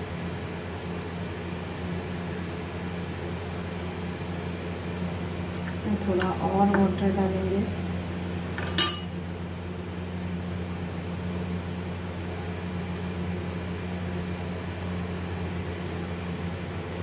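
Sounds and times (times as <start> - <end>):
low electrical hum: 0.0 - 17.0
spoon clinking on dish: 6.2 - 6.5, 8.6 - 9.2.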